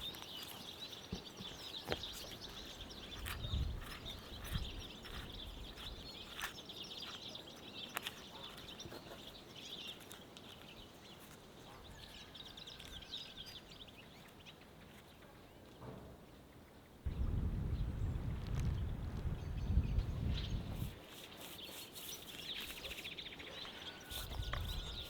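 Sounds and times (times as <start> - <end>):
birds chirping: 0.0 - 25.0
low thumps: 17.1 - 20.9.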